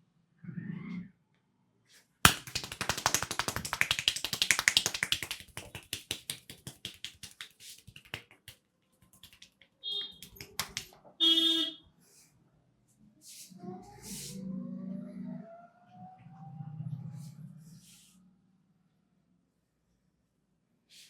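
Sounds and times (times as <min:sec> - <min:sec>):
hand strikes during head massage: 0:02.3 - 0:09.5, 0:10.1 - 0:10.9.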